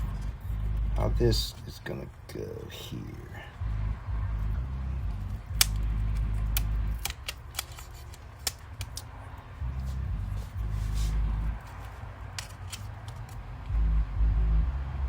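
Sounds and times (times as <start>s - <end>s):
low rumble: 0.0s - 1.5s, 3.3s - 7.4s, 9.3s - 12.0s, 13.5s - 15.0s.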